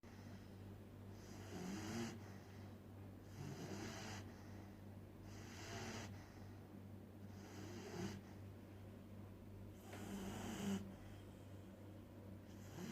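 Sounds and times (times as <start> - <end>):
puppy snoring: 1.1 - 6.6, 7.2 - 8.4, 9.8 - 11.4, 12.5 - 12.9.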